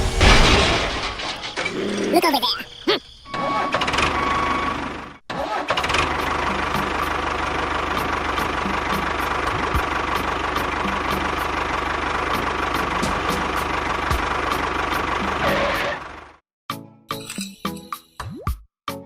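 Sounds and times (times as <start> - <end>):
small engine running: 3.4 - 16.4.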